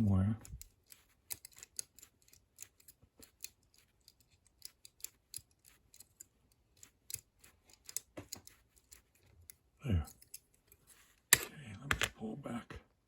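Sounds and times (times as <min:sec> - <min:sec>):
lock pick metallic clicking: 0:00.5 - 0:10.6.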